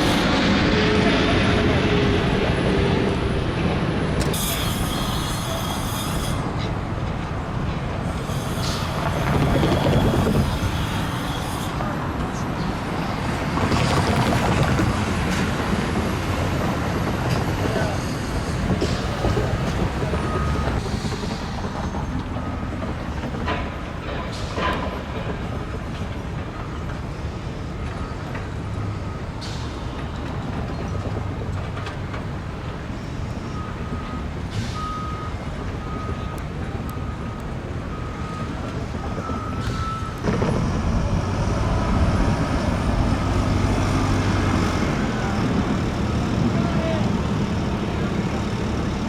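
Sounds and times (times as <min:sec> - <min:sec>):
rumble of engines and traffic: 0:00.0 - 0:49.0
reversing alarm beeping: 0:17.7 - 0:25.0, 0:33.1 - 0:47.0
low rumble of passing vehicles: 0:28.5 - 0:49.0.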